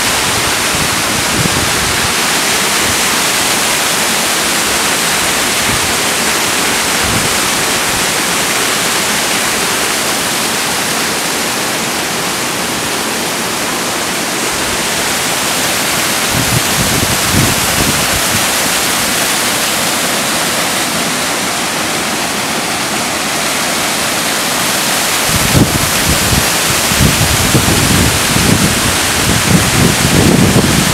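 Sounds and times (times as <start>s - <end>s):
wind buffeting microphone: 0.0s - 3.1s, 16.1s - 20.0s, 25.1s - 30.9s
waterfall rushing: 0.0s - 30.9s.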